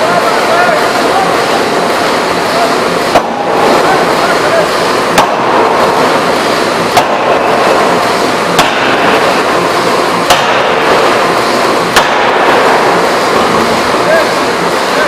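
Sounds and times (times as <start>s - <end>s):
loud steady machine noise: 0.0s - 15.0s
forging hammer striking: 4.8s - 14.9s.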